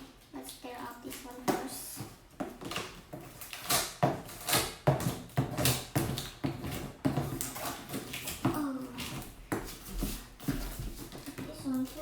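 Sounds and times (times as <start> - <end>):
packing tape ripping off cardboard: 2.5 - 12.0.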